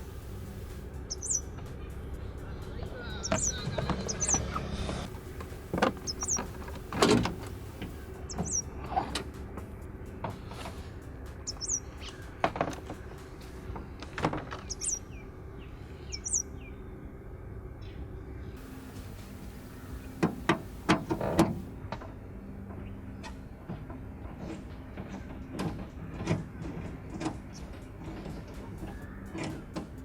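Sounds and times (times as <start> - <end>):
small bird chirping: 0.0 - 1.6, 2.2 - 8.7, 11.4 - 12.4, 14.6 - 15.2, 16.1 - 16.5, 18.6 - 21.7
hand tools clicking and knocking: 5.1 - 8.1, 18.6 - 21.7.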